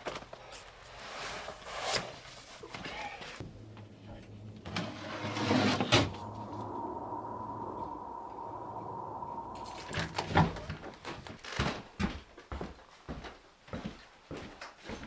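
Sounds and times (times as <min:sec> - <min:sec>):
faint steady hum: 0:03.4 - 0:10.9.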